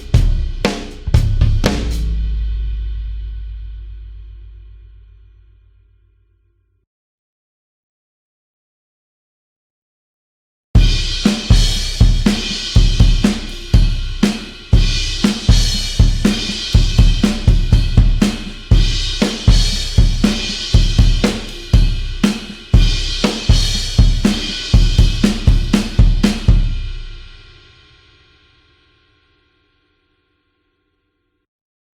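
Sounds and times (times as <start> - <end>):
rock drum groove: 0.0 - 3.5, 10.8 - 27.8.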